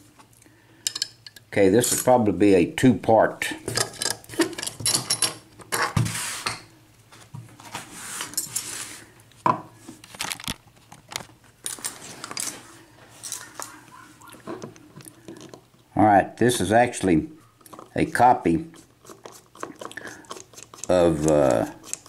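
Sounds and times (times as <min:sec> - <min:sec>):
metal tools clinking and scraping: 0:03.6 - 0:05.4, 0:11.6 - 0:13.8.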